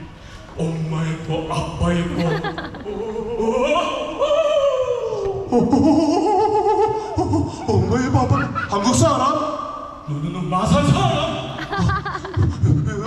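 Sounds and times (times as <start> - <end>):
person singing operatically: 0.6 - 9.0.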